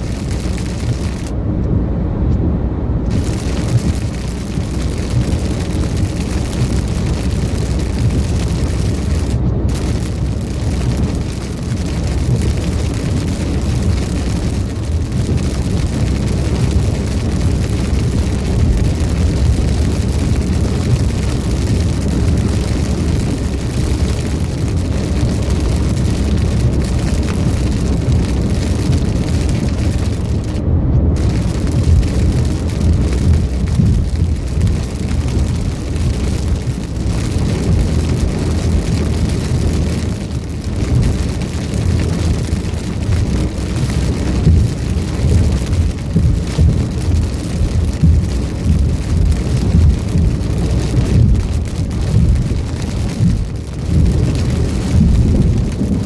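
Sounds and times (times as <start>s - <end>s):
heavy rain on a car: 0.0s - 2.1s, 2.7s - 56.0s
road and engine rumble: 0.0s - 56.0s.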